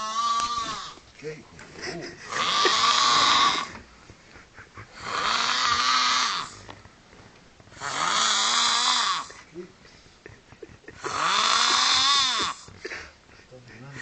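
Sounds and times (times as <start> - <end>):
person snoring: 1.9 - 3.8, 4.9 - 6.7, 7.7 - 9.4, 11.0 - 12.7.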